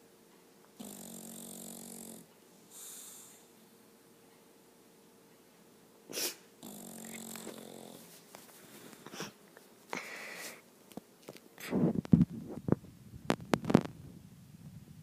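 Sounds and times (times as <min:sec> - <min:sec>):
bulldog snoring: 0:00.8 - 0:03.4, 0:06.6 - 0:08.1.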